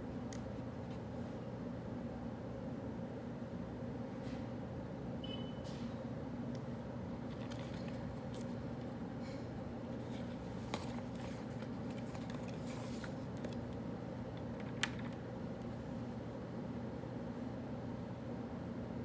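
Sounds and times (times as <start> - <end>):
ventilation hum: 0.0 - 19.0
pen and paper rustles: 7.3 - 8.6, 10.0 - 13.8.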